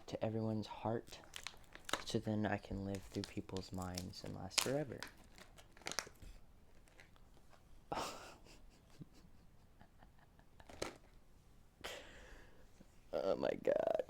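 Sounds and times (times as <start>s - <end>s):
faint clicks and rustles: 1.1s - 7.8s.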